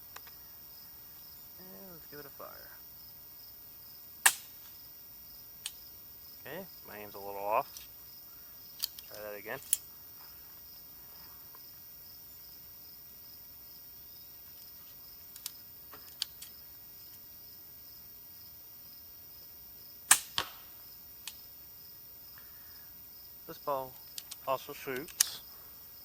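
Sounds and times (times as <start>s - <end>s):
crickets chirring: 0.0s - 26.0s
crossbow shot snap: 4.2s - 4.7s, 20.1s - 21.4s
crossbow reloading clicks: 4.3s - 4.7s, 8.8s - 9.1s, 15.3s - 16.6s, 20.1s - 20.6s, 24.1s - 24.4s, 25.0s - 25.4s.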